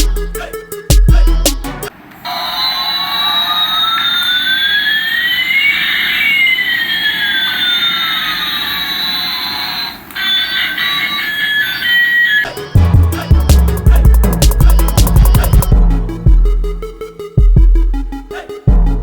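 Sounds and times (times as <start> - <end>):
background music: 0.0 - 1.9, 12.4 - 19.0
toy jet engine sound effect: 2.2 - 12.8.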